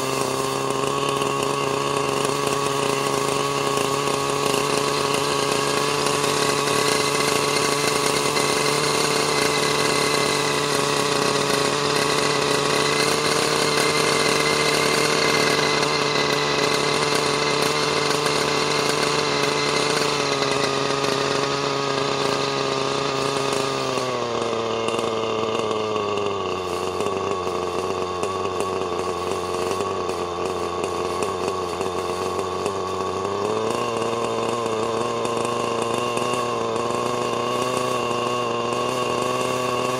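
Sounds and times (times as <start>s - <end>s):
model helicopter engine running: 0.0s - 39.9s.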